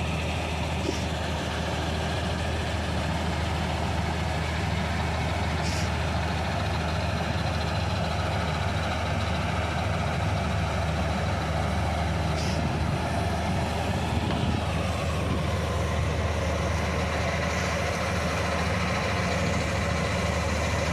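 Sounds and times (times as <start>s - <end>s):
machinery noise: 0.0s - 6.7s
diesel engine droning: 0.0s - 20.9s.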